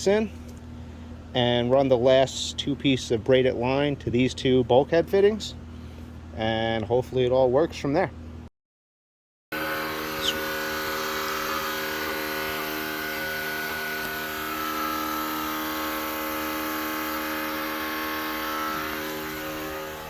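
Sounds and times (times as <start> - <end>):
truck engine running: 9.6 - 20.0
high falling chirp: 9.9 - 13.6.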